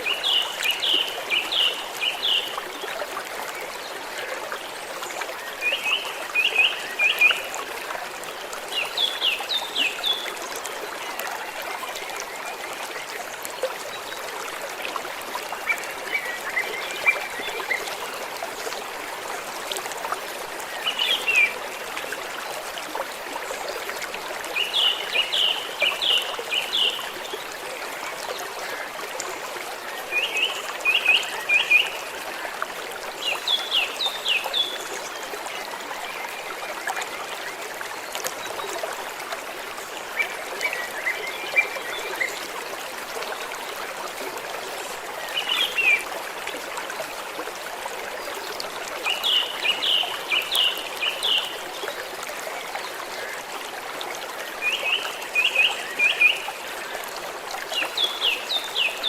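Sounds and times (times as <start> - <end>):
small stream trickling: 0.0 - 59.0.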